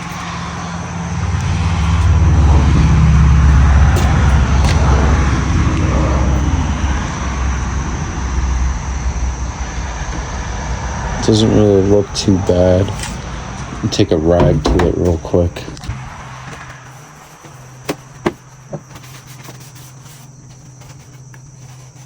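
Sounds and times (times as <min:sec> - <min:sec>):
low engine drone: 0:00.0 - 0:22.0.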